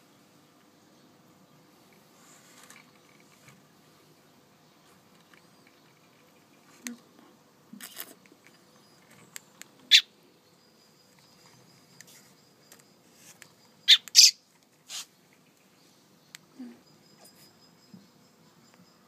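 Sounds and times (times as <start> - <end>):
baby bird chirping: 9.9 - 10.1, 13.8 - 15.0.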